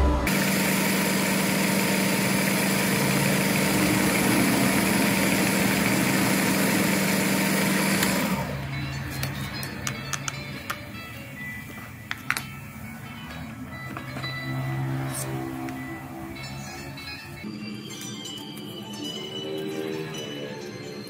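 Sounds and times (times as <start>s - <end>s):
power tool motor humming: 0.3s - 8.6s.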